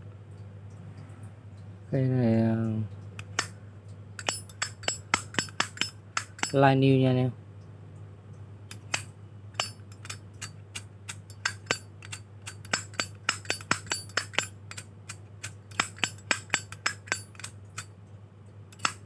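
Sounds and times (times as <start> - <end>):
metal lighter clicks: 3.2 - 3.6, 4.2 - 6.6, 8.7 - 17.9, 18.7 - 19.0.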